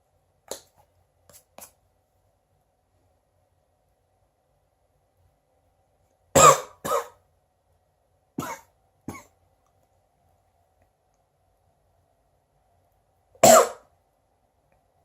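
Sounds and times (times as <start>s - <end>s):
man coughing: 6.4s - 7.2s, 8.4s - 9.3s, 13.4s - 13.8s.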